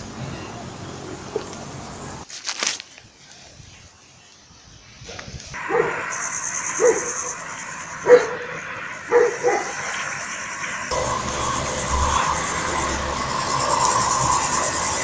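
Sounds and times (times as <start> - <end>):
dog barking: 5.6 - 6.0, 6.8 - 7.1, 8.0 - 8.5, 9.1 - 9.8.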